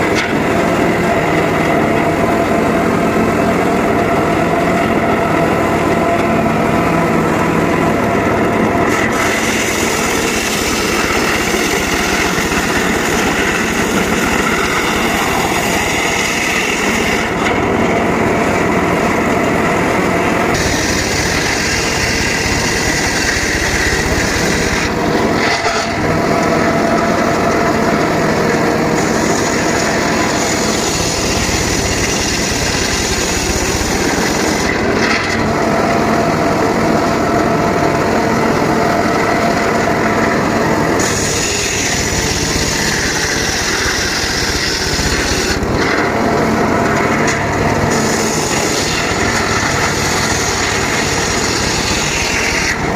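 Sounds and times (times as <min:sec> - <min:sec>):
circular saw cutting wood: 0:00.0 - 0:52.9.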